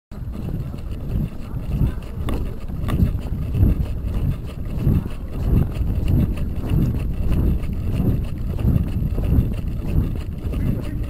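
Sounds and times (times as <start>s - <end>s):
wind buffeting microphone: 0.2s - 11.0s.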